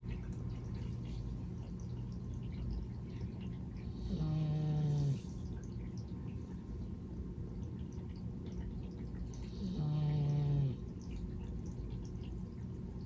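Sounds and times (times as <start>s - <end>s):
low steady hum: 0.0s - 13.0s
cat snoring: 4.0s - 5.4s, 9.6s - 10.8s.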